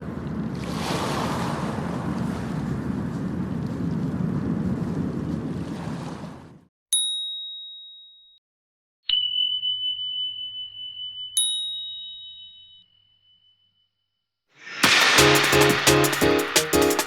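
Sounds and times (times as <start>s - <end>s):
high bell-like dings: 7.0s - 8.4s, 9.1s - 14.3s
lower bell-like ding: 9.1s - 13.9s.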